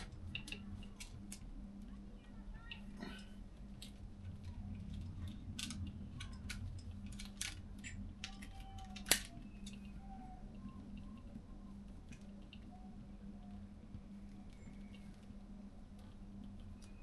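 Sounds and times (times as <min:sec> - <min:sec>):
low hum: 0:00.0 - 0:17.0
plastic wire loom clicks and rustles: 0:03.8 - 0:09.9.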